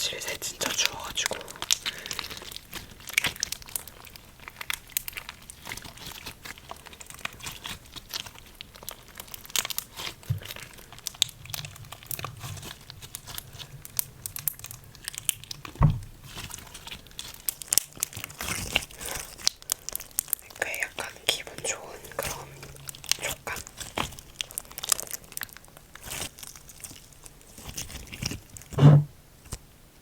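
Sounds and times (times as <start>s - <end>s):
slime crackling and popping: 0.0s - 28.8s
dull thump: 15.8s - 16.2s, 28.8s - 29.1s.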